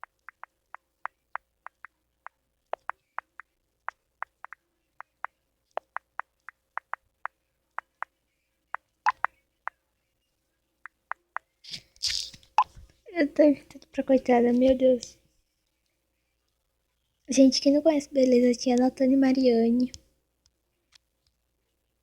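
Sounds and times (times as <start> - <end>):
touchscreen keyboard clicks: 0.0 - 2.0, 2.8 - 8.1, 9.1 - 9.3.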